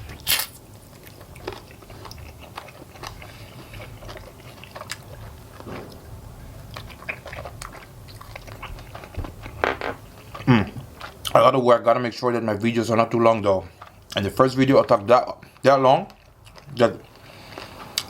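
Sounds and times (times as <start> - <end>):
bone cracking: 0.0 - 6.1
chewing crunches: 0.0 - 11.4, 13.7 - 18.0.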